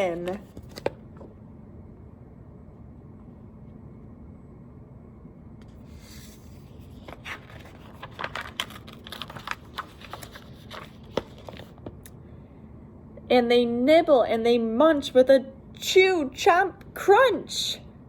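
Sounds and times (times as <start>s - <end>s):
book pages rustling and turning: 0.0s - 1.3s, 5.6s - 12.1s
room hum: 0.0s - 18.0s.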